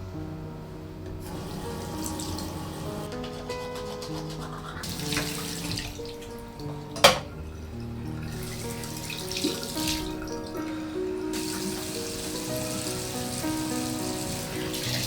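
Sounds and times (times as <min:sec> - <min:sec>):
tap running into sink: 0:01.1 - 0:07.5, 0:08.2 - 0:10.7.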